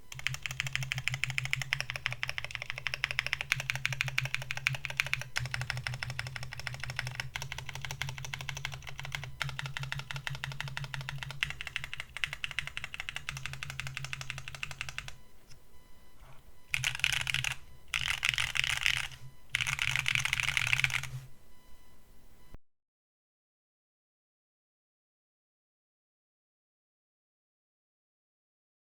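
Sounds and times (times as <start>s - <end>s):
mechanical keyboard typing: 0.1s - 15.2s, 16.7s - 21.2s.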